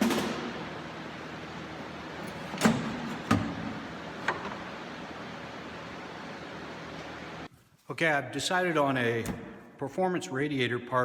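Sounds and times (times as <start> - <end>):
knocks and clunks of parts: 2.2 - 4.7.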